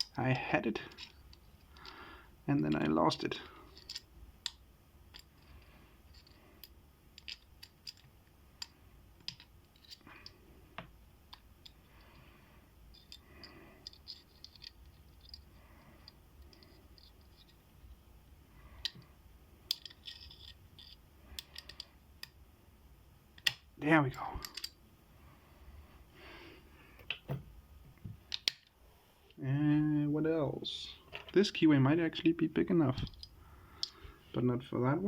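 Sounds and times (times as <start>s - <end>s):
metal tools clicking and scratching: 0.8s - 2.0s, 2.7s - 10.4s, 12.9s - 17.6s, 19.7s - 22.3s, 24.4s - 24.8s.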